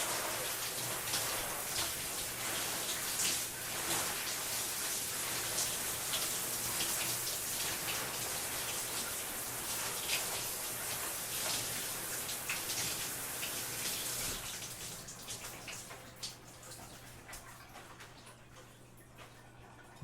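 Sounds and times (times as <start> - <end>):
shower water spray hissing: 0.0 - 14.8.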